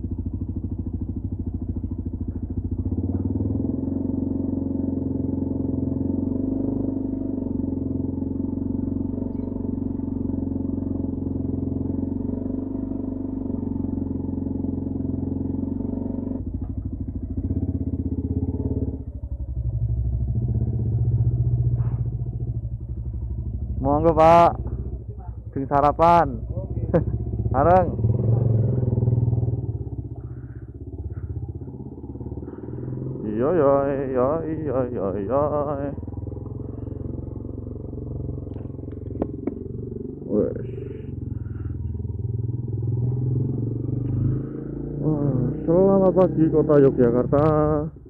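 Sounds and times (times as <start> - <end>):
motorcycle engine running: 0.0 - 48.0.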